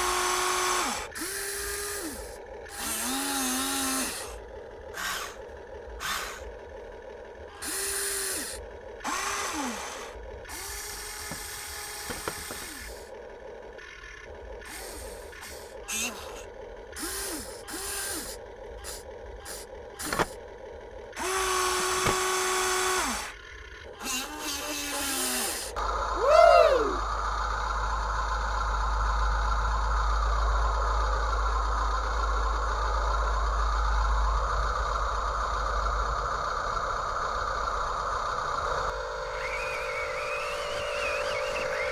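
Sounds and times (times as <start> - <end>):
toy electric motors whirring: 0.0 - 6.6, 7.5 - 20.4, 21.1 - 25.8, 38.6 - 41.9.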